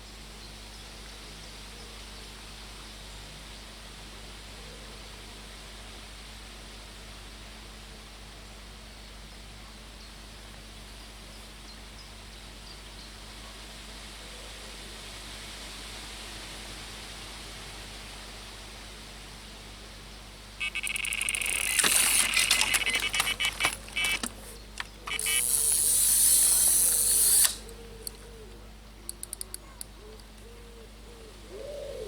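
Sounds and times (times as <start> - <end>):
rapid mechanical ratcheting: 20.6 - 28.2.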